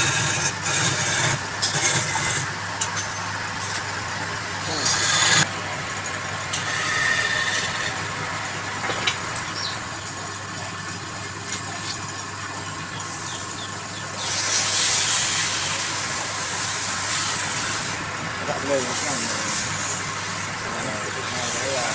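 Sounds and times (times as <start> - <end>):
lathe motor hum: 0.0 - 9.6
tool cutting wood hiss: 4.7 - 5.5, 14.2 - 18.0.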